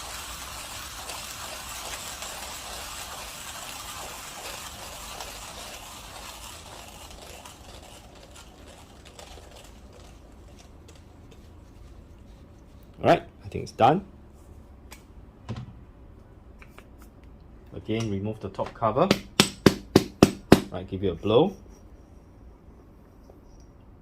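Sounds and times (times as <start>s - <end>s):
hand coffee grinder crunching beans: 0.0s - 12.3s.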